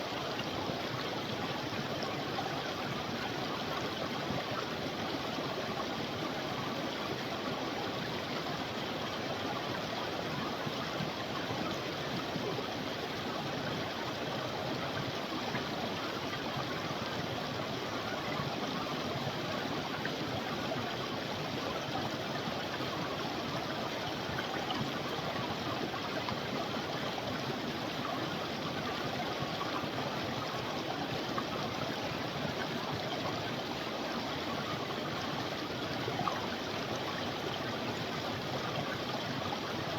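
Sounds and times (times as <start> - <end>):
creek water flowing: 0.0 - 39.9.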